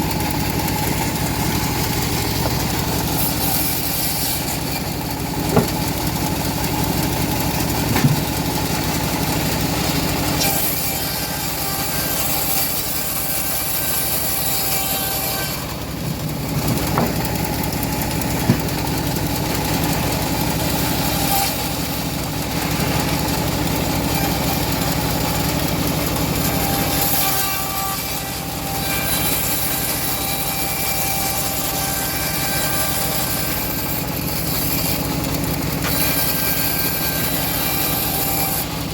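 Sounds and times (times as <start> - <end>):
bandsaw mill sawing a log: 0.0 - 38.9
short sharp knocks: 5.4 - 6.0, 7.8 - 8.4, 18.2 - 19.0.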